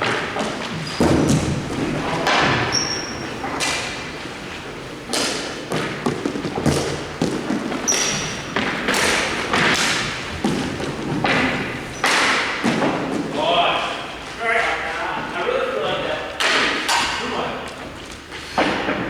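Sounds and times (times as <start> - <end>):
hockey sticks hitting puck: 0.0 - 13.7.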